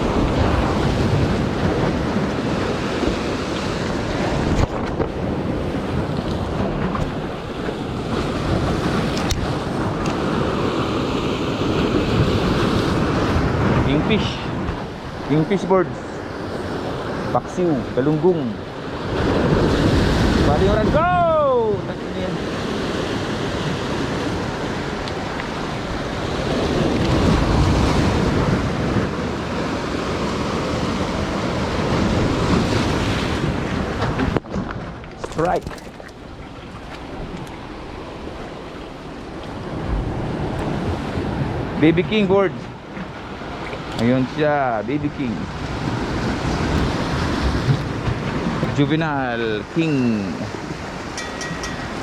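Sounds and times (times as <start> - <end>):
wind buffeting microphone: 0.0 - 17.3, 18.7 - 44.0, 45.2 - 48.8
sea surf breaking: 0.0 - 52.0.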